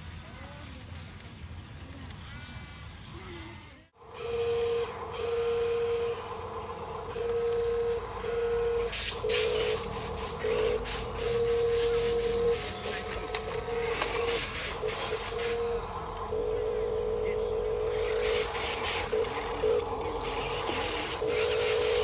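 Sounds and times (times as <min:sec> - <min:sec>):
electric motors whining: 0:04.0 - 0:22.0
rapid mechanical clicking: 0:08.8 - 0:22.0.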